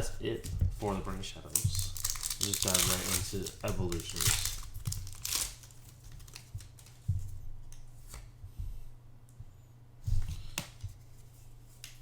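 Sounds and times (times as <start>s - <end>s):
low steady hum: 0.0s - 12.0s
cards and foil wrapper clicking: 1.5s - 7.0s.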